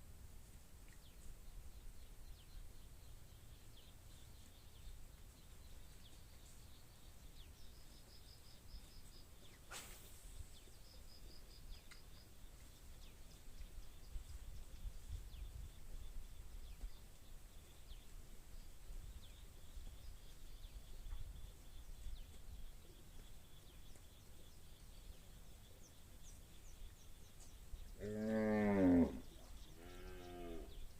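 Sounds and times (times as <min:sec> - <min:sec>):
small birds chirping: 0:00.4 - 0:30.9
sharp falling swish: 0:09.7 - 0:10.2.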